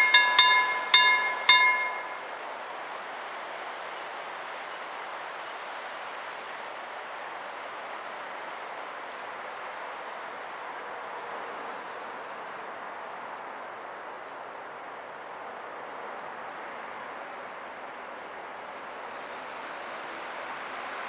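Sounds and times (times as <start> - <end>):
freight train rumble: 0.0 - 2.3.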